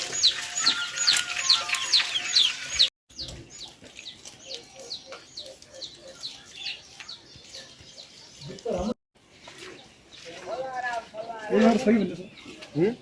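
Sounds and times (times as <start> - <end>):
chicks peeping: 0.0 - 8.8.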